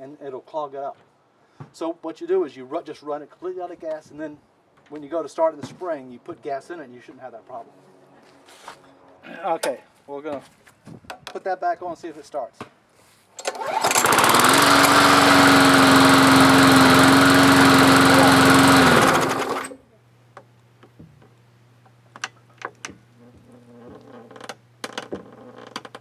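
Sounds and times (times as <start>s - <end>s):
lawn mower engine running: 13.4s - 21.0s.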